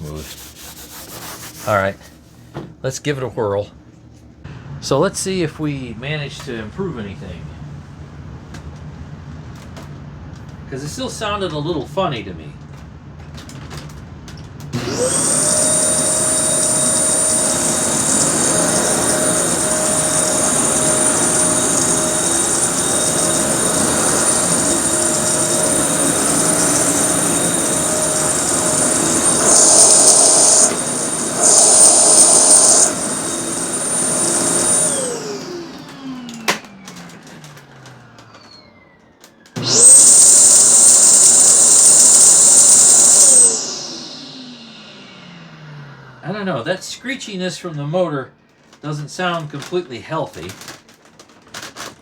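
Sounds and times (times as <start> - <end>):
upright vacuum cleaner whining: 4.5 - 47.8, 48.4 - 52.0
vacuum motor winding down: 14.4 - 46.7.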